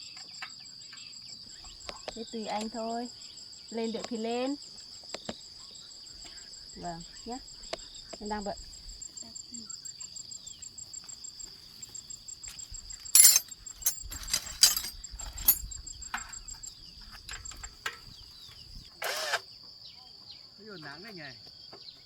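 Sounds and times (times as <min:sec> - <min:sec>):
crickets trilling: 0:00.0 - 0:22.0
metal parts clinking: 0:13.1 - 0:15.7.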